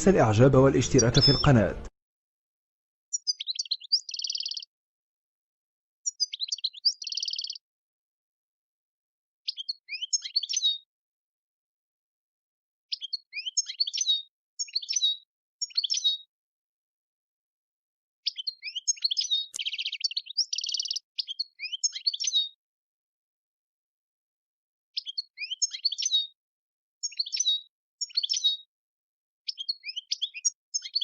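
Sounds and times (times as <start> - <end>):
goldfinch twittering song: 0.0 - 1.8, 3.2 - 4.7, 6.1 - 7.6, 9.5 - 10.8, 12.9 - 16.3, 18.2 - 22.6, 25.0 - 26.4, 27.0 - 28.7, 29.5 - 31.0.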